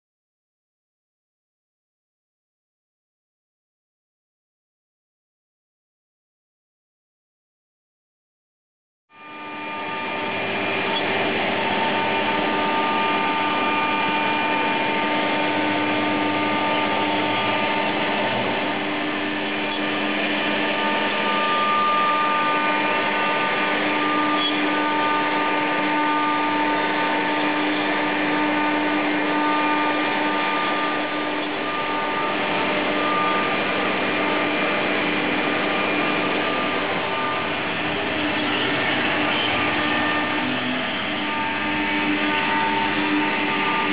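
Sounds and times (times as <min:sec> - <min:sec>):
router spindle whine: 0:09.1 - 0:43.9.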